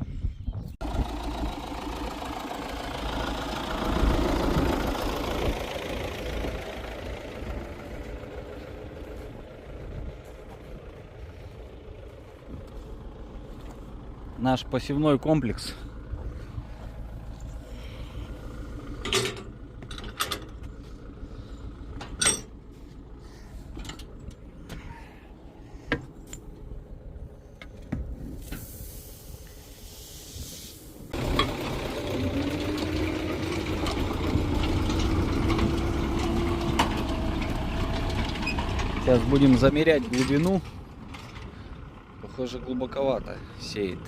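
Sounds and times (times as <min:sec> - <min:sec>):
tractor engine hum: 0:00.4 - 0:44.0
hiss: 0:28.3 - 0:31.1
machinery knocks and rattles: 0:31.2 - 0:41.5.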